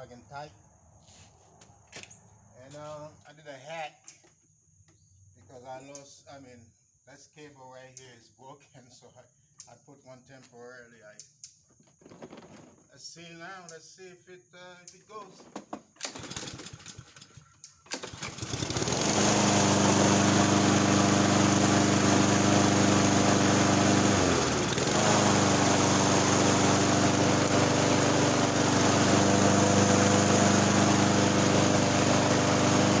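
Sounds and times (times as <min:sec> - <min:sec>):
lawnmower engine running: 0:11.9 - 0:12.8, 0:15.3 - 0:33.0.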